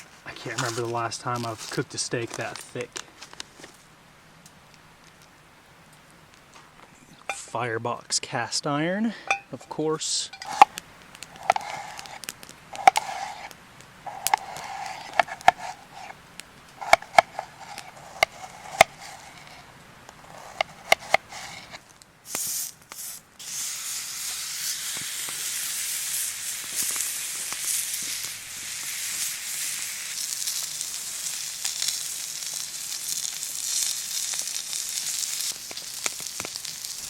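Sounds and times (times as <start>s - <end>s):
steak sizzling in a pan: 10.3s - 16.2s, 16.8s - 37.0s.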